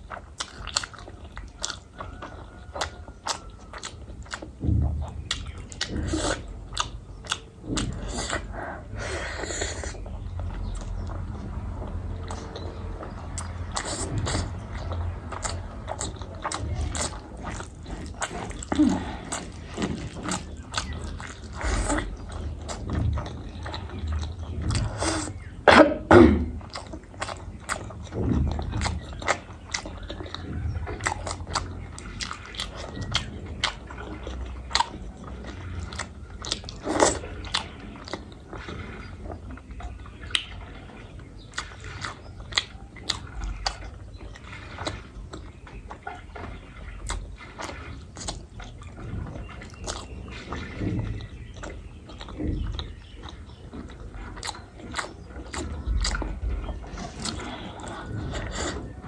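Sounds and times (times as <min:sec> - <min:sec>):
person chewing and eating: 0:00.0 - 0:59.0.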